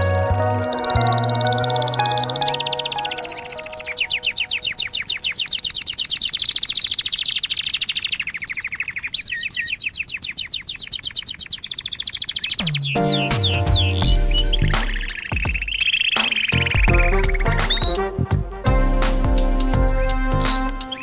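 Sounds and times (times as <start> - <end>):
songbird trilling: 1.2 - 16.7.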